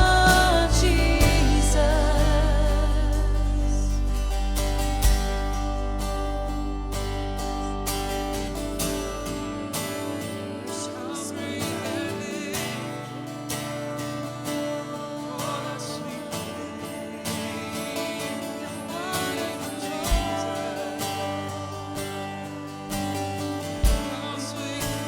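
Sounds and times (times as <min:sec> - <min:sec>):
voices singing: 0:00.0 - 0:04.6, 0:09.5 - 0:25.0
bass drum hit: 0:00.0 - 0:05.9
bass guitar: 0:00.0 - 0:10.4, 0:20.0 - 0:25.0
piano: 0:00.0 - 0:25.0
strummed acoustic guitar: 0:00.0 - 0:25.0.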